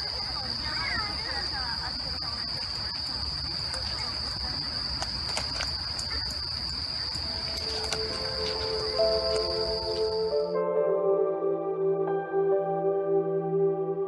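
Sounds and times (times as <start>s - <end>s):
crickets trilling: 0.0s - 10.6s.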